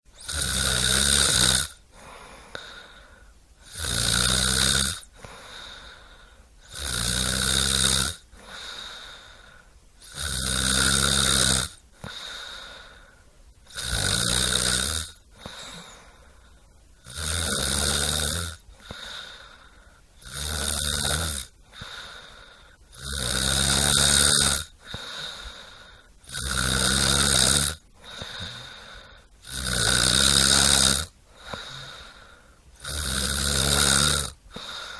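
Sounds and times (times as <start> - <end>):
person snoring: 0.2 - 34.9
quiet breathing: 1.7 - 3.9, 4.9 - 6.8, 8.2 - 10.4, 11.7 - 14.1, 14.8 - 17.4, 18.1 - 20.3, 21.4 - 23.1, 24.6 - 26.7, 27.6 - 29.6, 30.4 - 34.9.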